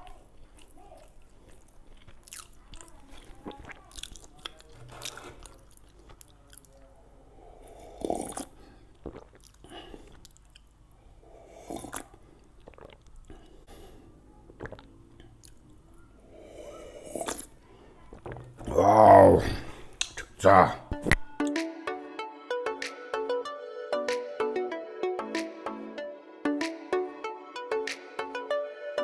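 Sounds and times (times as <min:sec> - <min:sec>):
person chewing and biting donuts: 0:00.2 - 0:06.9, 0:07.7 - 0:15.9, 0:16.5 - 0:20.3
wet mouth smacks and clicks: 0:11.9 - 0:13.2, 0:14.6 - 0:15.6, 0:20.0 - 0:20.3.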